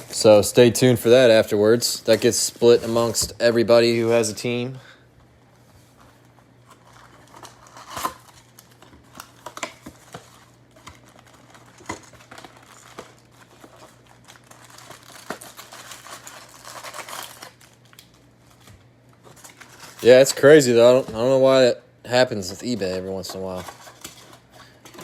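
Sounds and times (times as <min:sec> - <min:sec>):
plastic wrapping crinkling: 0:06.1 - 0:21.4.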